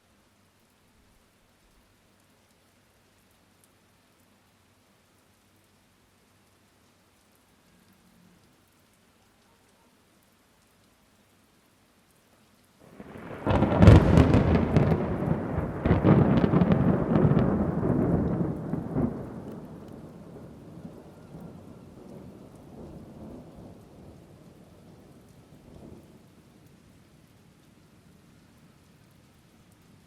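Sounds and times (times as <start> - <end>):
rain falling: 0.0 - 30.0
thunder crash and rumble: 12.9 - 20.0.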